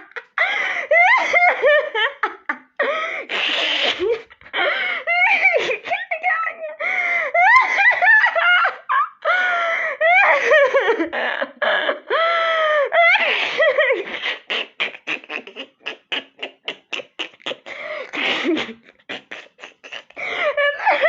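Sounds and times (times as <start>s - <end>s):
person laughing hard: 0.0s - 21.0s
breathy gasps: 2.8s - 3.3s, 4.6s - 5.1s, 6.8s - 7.4s, 17.6s - 18.5s, 20.1s - 20.6s.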